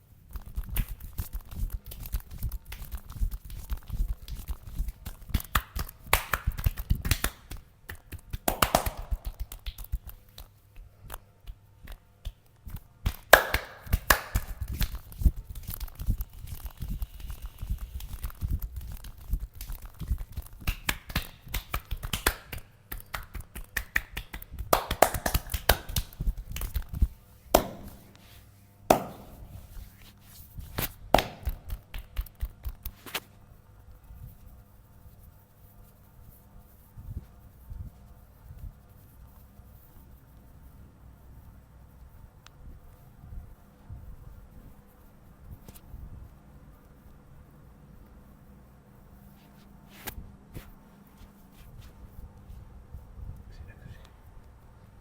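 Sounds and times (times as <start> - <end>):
hands rubbing skin: 0.2 - 52.7
hands slapping and tapping skin: 0.3 - 33.3.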